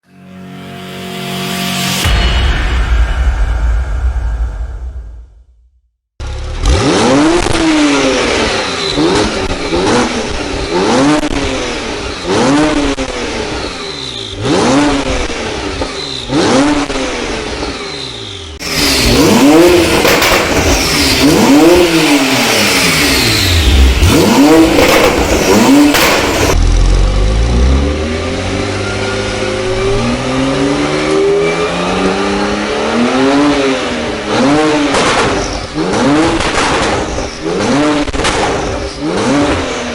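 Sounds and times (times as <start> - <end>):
car engine revving: 6.2 - 39.9.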